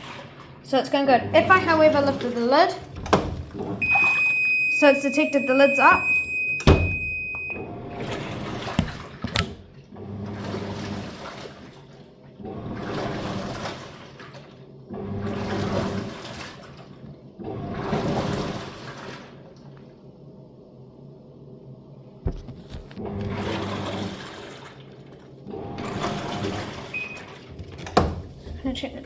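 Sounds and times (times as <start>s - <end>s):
water sloshing in tub: 0.0s - 20.0s, 22.3s - 29.0s
washing machine warning beep: 3.4s - 9.0s, 25.9s - 27.5s
thump: 8.8s - 9.6s.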